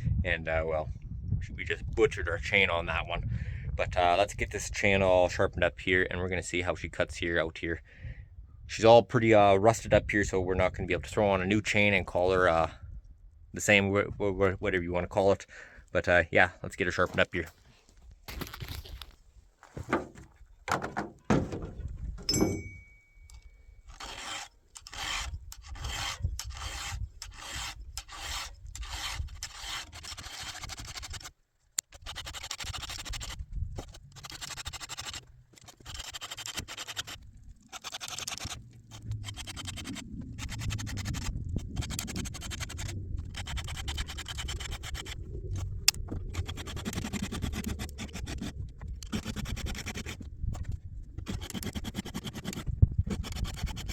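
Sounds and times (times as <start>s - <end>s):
file rasping on saw chain: 23.9s - 31.3s, 31.9s - 45.2s, 46.4s - 50.3s, 51.2s - 53.9s.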